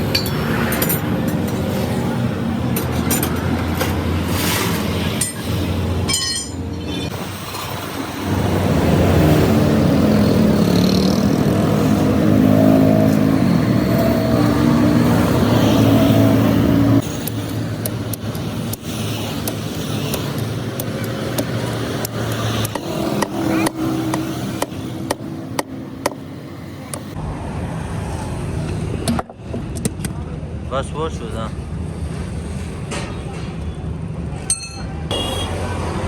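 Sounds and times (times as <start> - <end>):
traffic engines running: 0.0 - 36.0.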